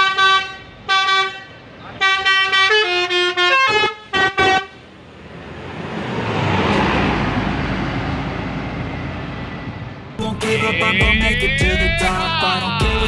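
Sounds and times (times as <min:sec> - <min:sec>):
multi-tone bus horn melody: 0:00.0 - 0:04.8
large vehicle passing: 0:04.7 - 0:11.0.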